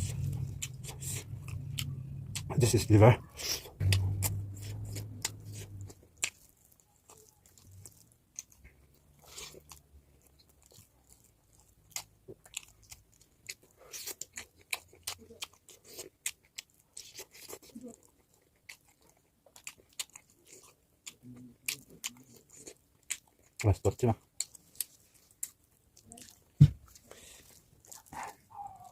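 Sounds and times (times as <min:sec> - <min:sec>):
mouth chewing food: 0:00.0 - 0:28.9.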